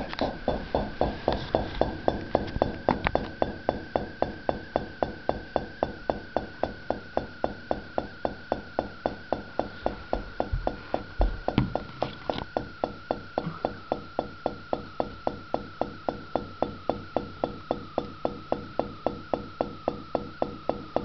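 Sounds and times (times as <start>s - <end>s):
refrigerator compressor clunking: 8.3s - 18.9s.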